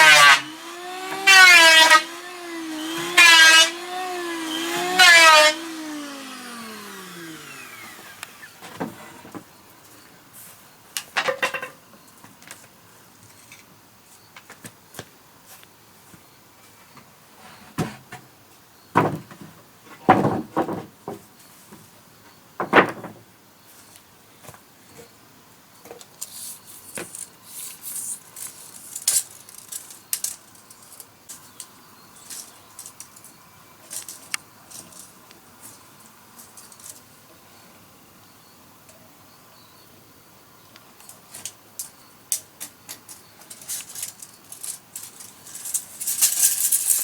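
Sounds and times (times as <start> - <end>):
objects being handled: 25.9 - 37.1, 42.6 - 47.0.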